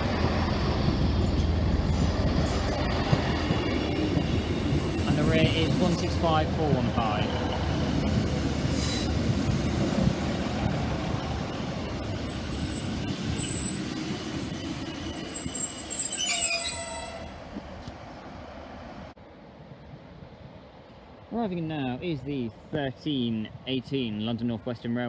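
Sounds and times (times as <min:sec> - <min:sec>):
train rumble: 0:00.0 - 0:19.2
wheel and brake squeals: 0:03.9 - 0:06.0, 0:12.3 - 0:17.4.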